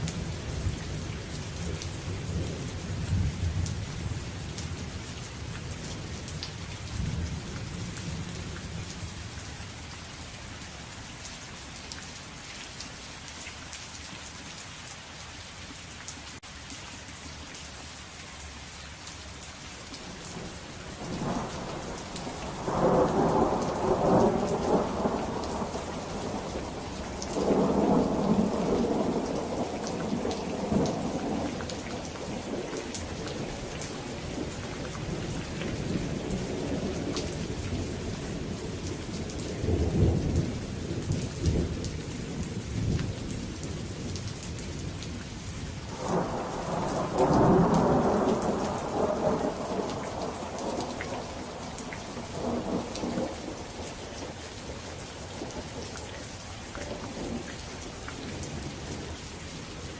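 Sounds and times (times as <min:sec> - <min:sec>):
steady rain falling: 0:00.0 - 0:59.9
rolling thunder: 0:21.0 - 0:32.5, 0:45.9 - 0:53.8.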